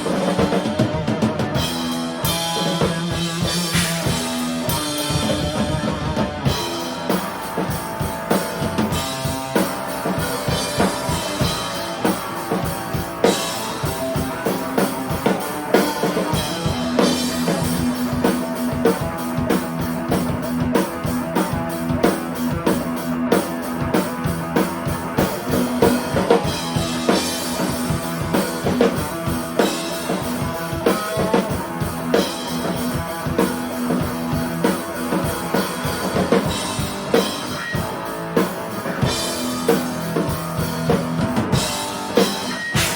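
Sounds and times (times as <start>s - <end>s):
bass guitar: 0.0s - 42.9s
drum kit: 0.0s - 42.9s
electric guitar: 0.0s - 42.9s.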